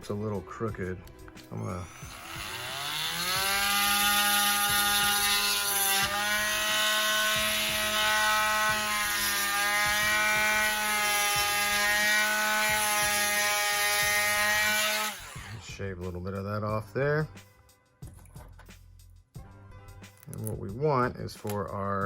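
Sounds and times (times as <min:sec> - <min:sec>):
rotary tool high whine: 0:01.8 - 0:15.6.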